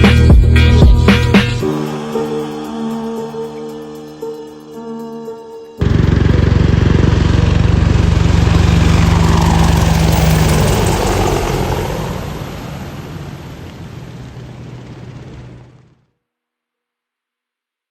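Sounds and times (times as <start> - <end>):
helicopter flying past: 5.8 - 16.1.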